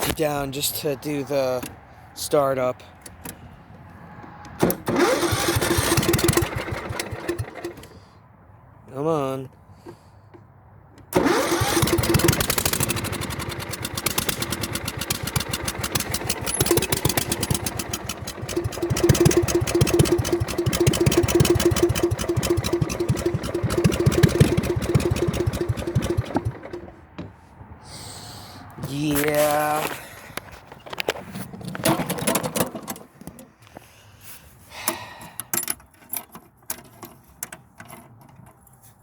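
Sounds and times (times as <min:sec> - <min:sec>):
small mower engine running unevenly: 0:04.9 - 0:07.9, 0:11.2 - 0:27.0.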